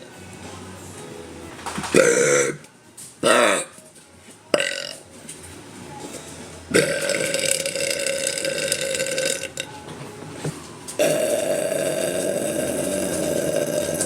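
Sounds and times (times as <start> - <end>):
woman burping: 2.0 - 2.6, 3.2 - 3.8, 4.6 - 5.0, 6.7 - 9.7, 11.0 - 14.0.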